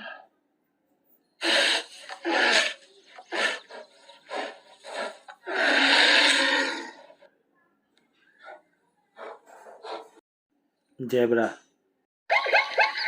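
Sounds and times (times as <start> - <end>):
bear growling and roaring: 1.4 - 7.2.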